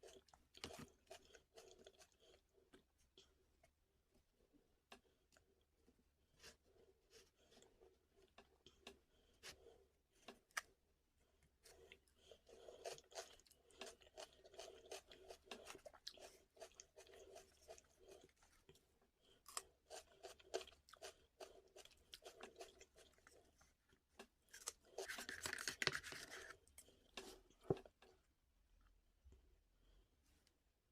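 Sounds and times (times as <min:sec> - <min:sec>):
close-up chewing: 0:00.0 - 0:03.7, 0:11.4 - 0:28.1.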